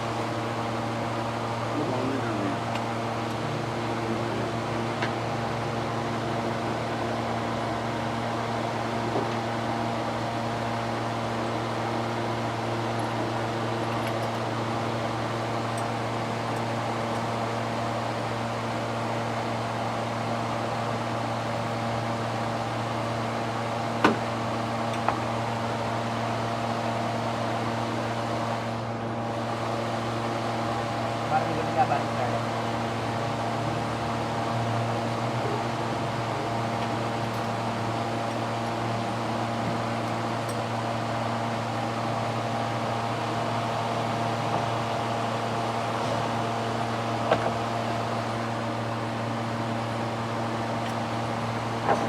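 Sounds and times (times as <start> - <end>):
mechanical hum: 0.0 - 52.0.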